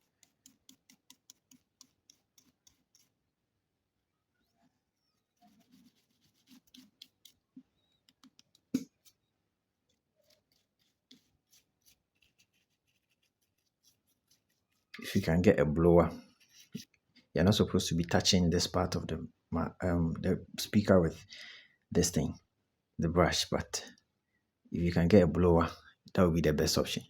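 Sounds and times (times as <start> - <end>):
soft brush strokes: 0.0 - 3.3, 4.4 - 15.2, 16.1 - 17.0.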